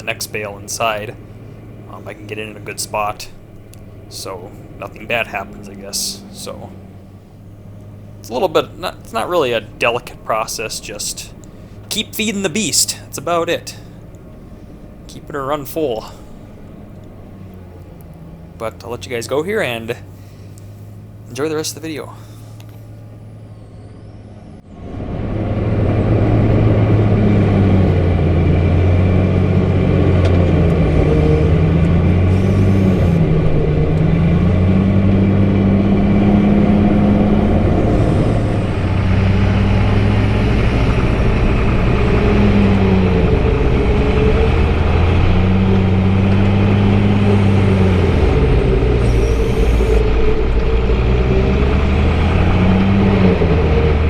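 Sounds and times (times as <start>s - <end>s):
diesel grinder running under load: 25.4s - 54.0s.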